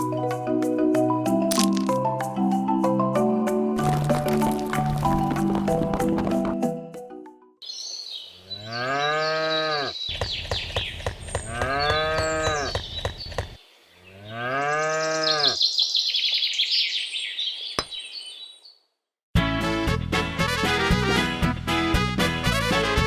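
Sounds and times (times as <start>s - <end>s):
birds chirping: 7.6s - 18.9s
cow mooing: 8.5s - 10.0s, 11.5s - 12.7s, 14.1s - 15.6s.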